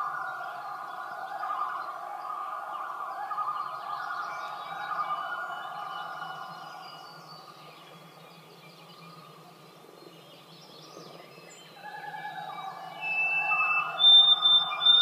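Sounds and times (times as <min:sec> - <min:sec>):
loons wailing: 0:12.9 - 0:15.0
sparrow whistled notes: 0:12.9 - 0:15.0.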